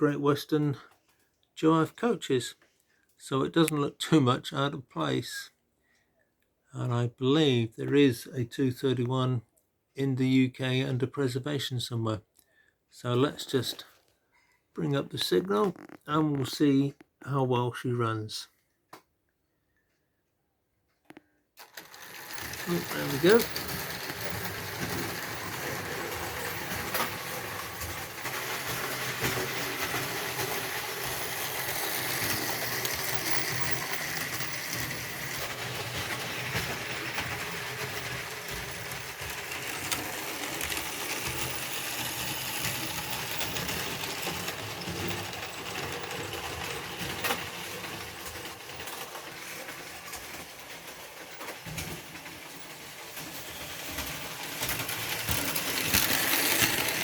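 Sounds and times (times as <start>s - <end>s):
model train motor whirring: 21.6s - 57.0s
wheels rattling on rail: 22.0s - 57.0s.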